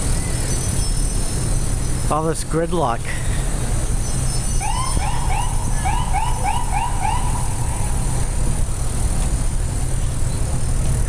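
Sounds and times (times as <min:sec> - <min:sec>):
city street traffic rumble: 0:00.0 - 0:11.0
rapid warbling chirps signal: 0:04.0 - 0:08.3.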